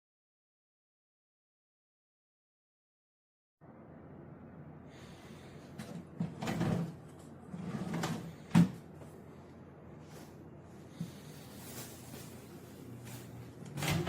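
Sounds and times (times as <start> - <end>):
cabinet drawers sliding and scraping: 5.8 - 8.9, 13.2 - 14.0.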